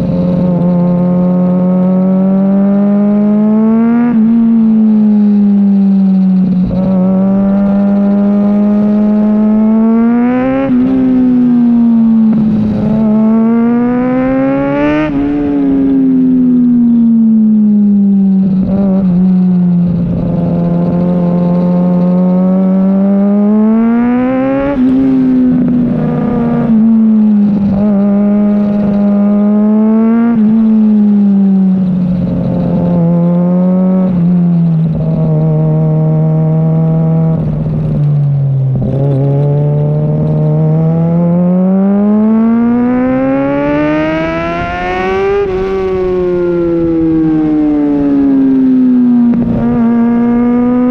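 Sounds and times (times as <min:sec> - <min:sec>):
motorcycle engine revving: 0:00.0 - 0:50.9.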